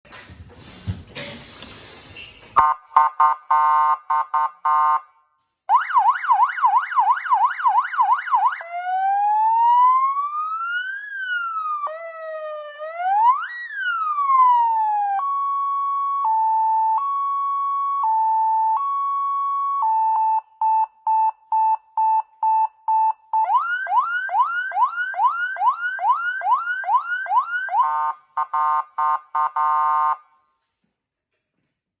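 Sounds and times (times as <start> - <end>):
electronic car siren: 2.6 - 5.1, 5.7 - 20.5, 23.4 - 30.3.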